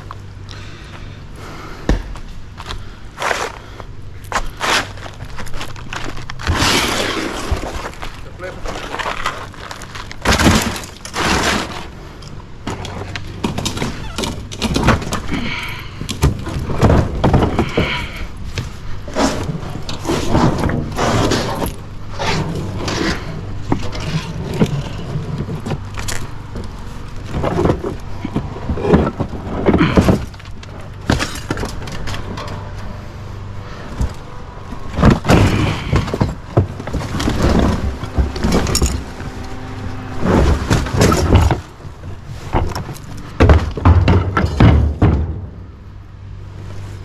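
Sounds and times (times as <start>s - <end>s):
shed crashing and breaking: 4.3s - 46.3s
debris falling: 4.7s - 12.0s, 34.8s - 45.8s.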